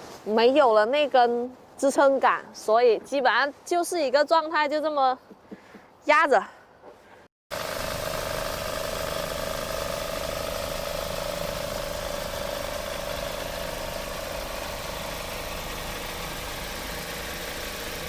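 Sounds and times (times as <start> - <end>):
car engine idling: 7.5 - 18.0.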